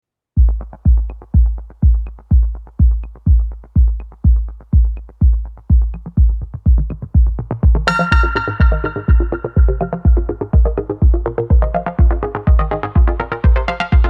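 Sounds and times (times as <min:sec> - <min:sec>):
electronic kick drum beat: 0:00.4 - 0:14.0
bright synthesizer chord: 0:07.9 - 0:11.1.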